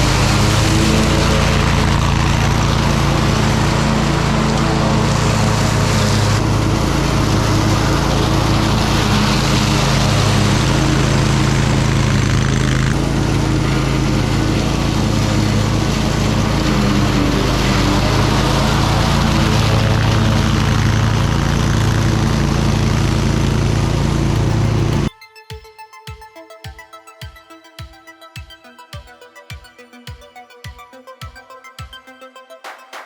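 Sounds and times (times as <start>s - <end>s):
grass cutting hiss: 0.0s - 25.1s
lawn mower engine running: 0.0s - 25.1s.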